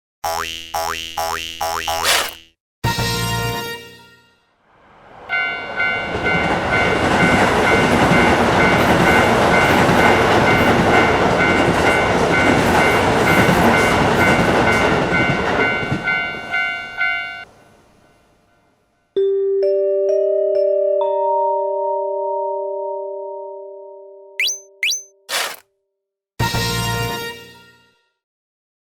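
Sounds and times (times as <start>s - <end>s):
level-crossing warning bell: 5.3s - 17.5s.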